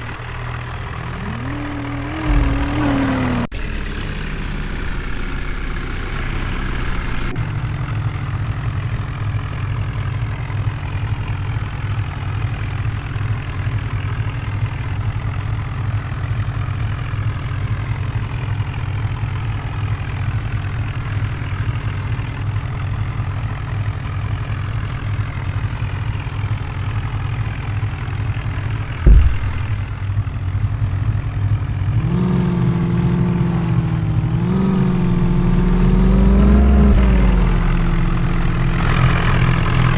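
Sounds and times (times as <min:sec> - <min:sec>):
loud thump: 0:00.0 - 0:05.2, 0:29.0 - 0:30.1, 0:32.0 - 0:38.1
heavy diesel engine revving: 0:00.0 - 0:08.9, 0:31.8 - 0:39.9.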